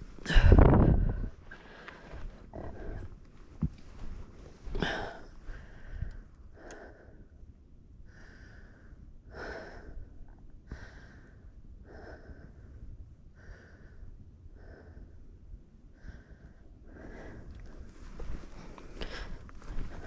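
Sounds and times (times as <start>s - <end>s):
person breathing hard: 0.1s - 7.4s, 8.0s - 20.0s.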